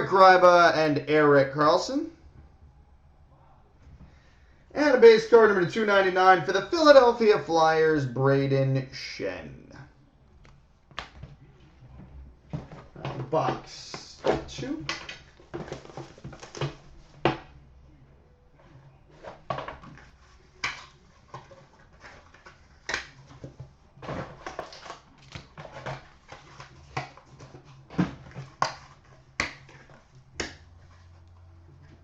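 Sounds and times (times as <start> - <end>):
plastic wrapper crinkling: 19.2 - 31.4.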